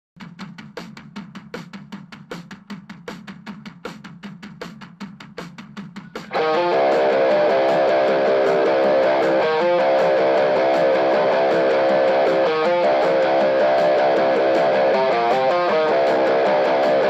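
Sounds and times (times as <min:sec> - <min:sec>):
rock drum beat: 0:00.2 - 0:17.0
distorted electric guitar riff: 0:06.2 - 0:17.0.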